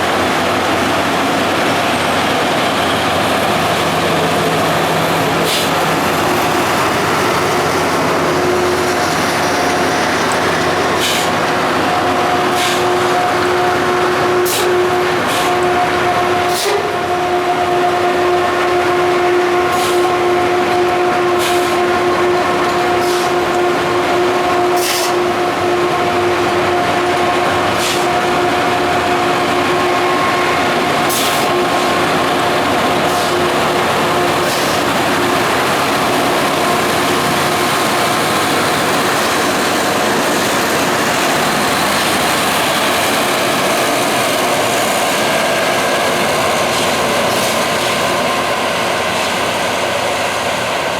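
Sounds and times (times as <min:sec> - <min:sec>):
rail grinder train droning: 0:00.0 - 0:50.9.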